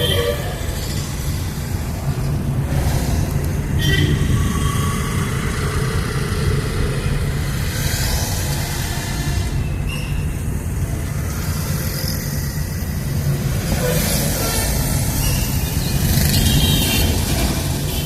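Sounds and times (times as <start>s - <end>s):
bus rumbling inside cabin: 0.0s - 18.0s
bus body rattles and thuds: 14.2s - 18.0s.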